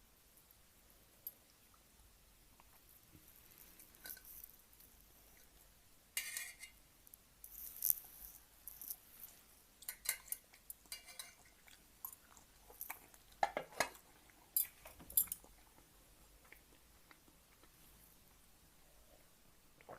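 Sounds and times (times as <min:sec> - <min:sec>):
utensils clinking against bowl: 0:09.8 - 0:11.5.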